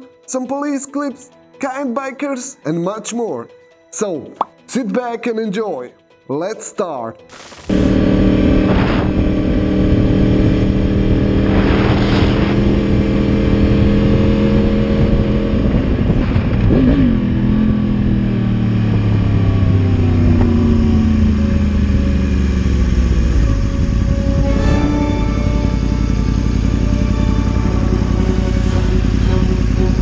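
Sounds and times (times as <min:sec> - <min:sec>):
motorcycle engine running: 0:07.6 - 0:30.0.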